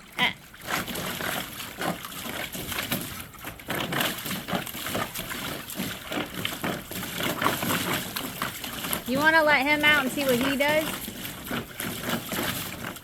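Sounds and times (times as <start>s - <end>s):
water sloshing and splashing: 0.0s - 13.0s.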